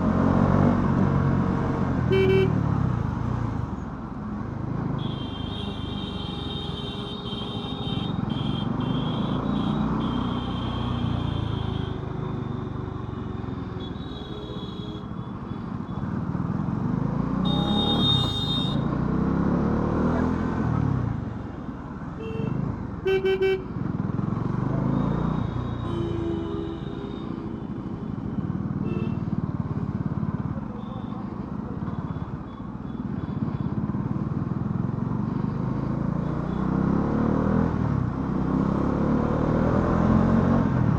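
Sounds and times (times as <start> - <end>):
road noise: 0.0 - 40.9
vehicle horns tooting: 2.1 - 2.6, 5.0 - 12.6, 13.6 - 16.0, 17.4 - 18.9, 22.2 - 23.7, 25.4 - 27.9, 28.8 - 29.3
motorcycle engine revving: 16.4 - 21.0.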